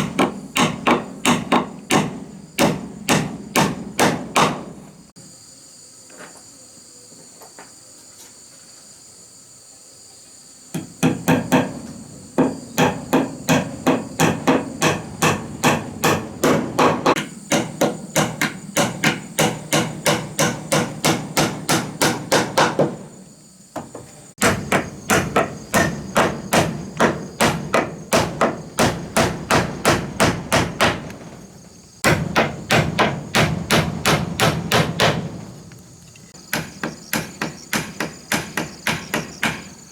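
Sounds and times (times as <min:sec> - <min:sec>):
hammer blows on wood: 0:00.0 - 0:04.8, 0:10.8 - 0:23.2, 0:23.8 - 0:35.6
insects chirring: 0:00.0 - 0:39.9.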